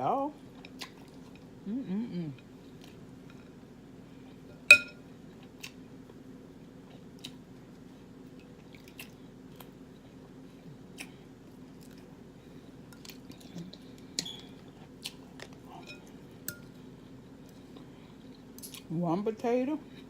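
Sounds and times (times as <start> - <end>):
faint steady hum: 0.0 - 20.0
person chewing food: 0.5 - 1.6, 5.2 - 18.9.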